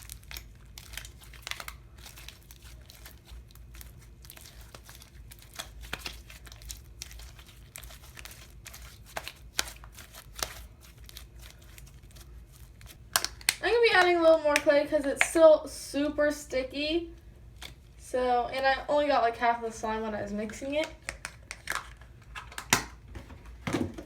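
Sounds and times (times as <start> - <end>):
crackles and clicks of slime: 0.0 - 15.5, 20.4 - 22.9
hands kneading sticky slime: 0.0 - 15.5.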